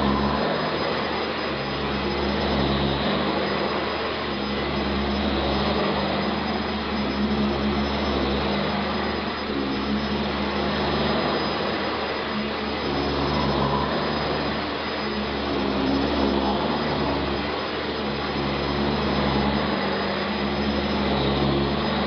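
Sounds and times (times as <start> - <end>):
vacuum cleaner running: 0.0 - 22.0.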